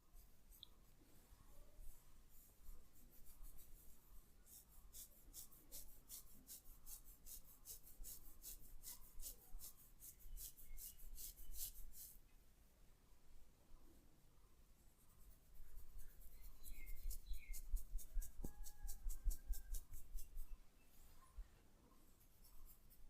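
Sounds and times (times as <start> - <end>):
fingers rubbing through hair: 2.3 - 12.2, 15.1 - 20.6, 22.2 - 23.0.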